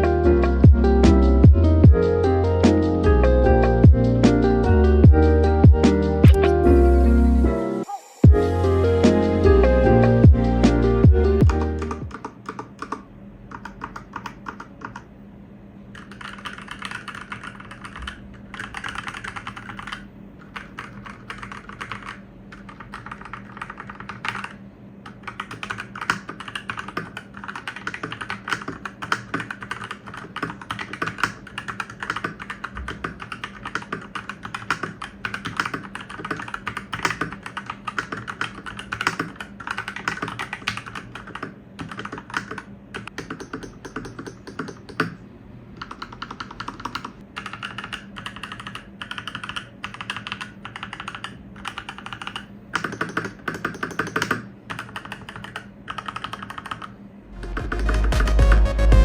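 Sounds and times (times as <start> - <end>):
mechanical keyboard typing: 6.2 - 6.6, 11.4 - 15.1, 15.9 - 45.2, 45.8 - 58.6.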